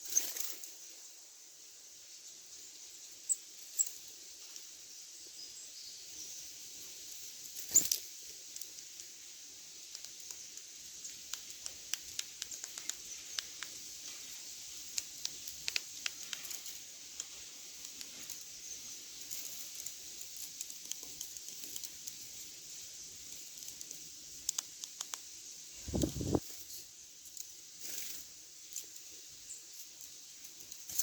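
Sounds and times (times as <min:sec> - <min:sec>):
bird pecking and tapping: 0:11.1 - 0:14.2, 0:14.9 - 0:18.3.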